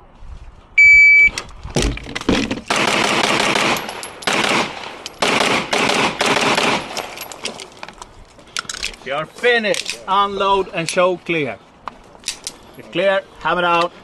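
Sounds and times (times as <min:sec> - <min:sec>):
shot timer beep: 0:00.8 - 0:01.3
handgun firing rapid shots: 0:02.7 - 0:07.0.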